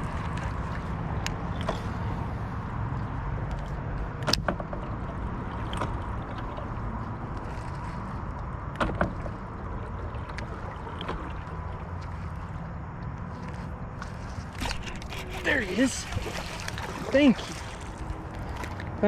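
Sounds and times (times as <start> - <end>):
water rushing against boat hull: 0.0 - 19.0.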